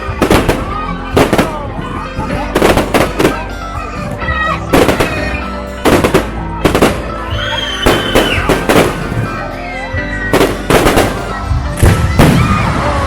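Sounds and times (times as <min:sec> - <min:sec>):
fireworks bangs: 0:00.0 - 0:03.6, 0:04.7 - 0:09.5, 0:10.3 - 0:12.8
background music: 0:00.0 - 0:13.0.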